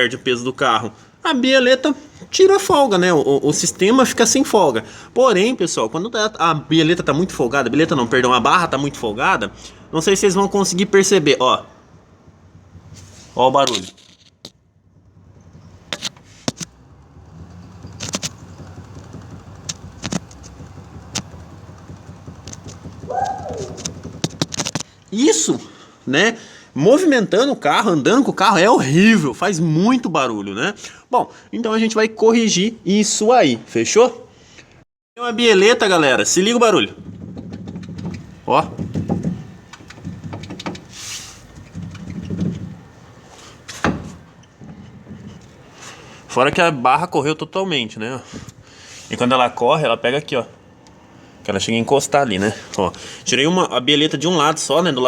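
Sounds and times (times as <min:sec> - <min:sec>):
suspension knocking and clicking: 0:10.0 - 0:25.1, 0:35.7 - 0:46.3.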